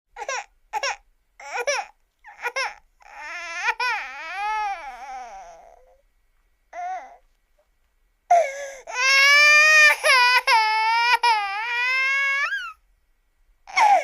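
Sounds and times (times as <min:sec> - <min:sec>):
baby crying: 0:00.2 - 0:06.0, 0:06.7 - 0:07.2, 0:08.3 - 0:12.8, 0:13.7 - 0:14.0.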